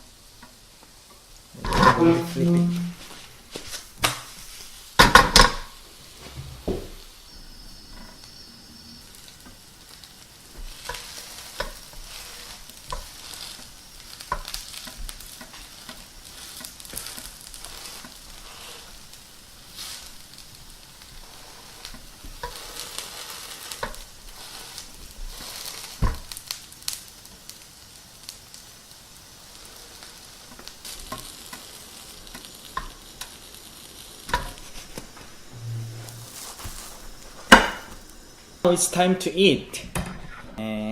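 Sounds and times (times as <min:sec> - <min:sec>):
pancake sizzling in oil: 0:00.0 - 0:39.7
knocks against pan: 0:37.5 - 0:38.0.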